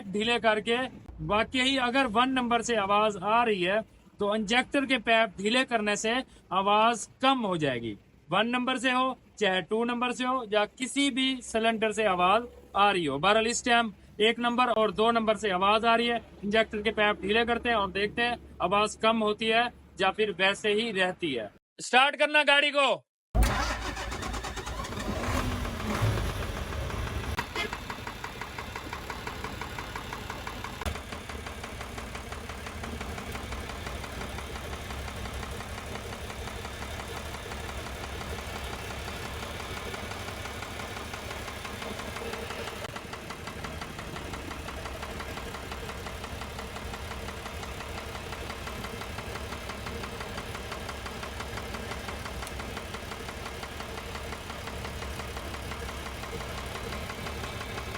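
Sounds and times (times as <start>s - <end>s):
diesel engine idling with a knock: 25.2s - 57.9s.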